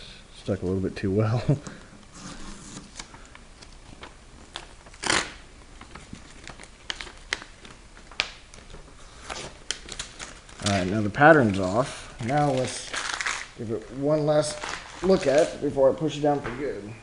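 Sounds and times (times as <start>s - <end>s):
tape crinkling and clicking: 2.8s - 15.6s
tape tearing rasp: 4.9s - 5.4s.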